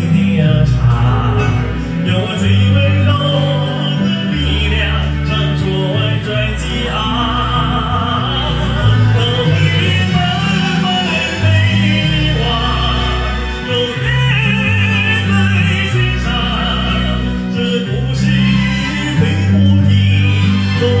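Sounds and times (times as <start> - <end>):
karaoke backing track: 0.0 - 21.0
person singing classical style: 0.0 - 21.0.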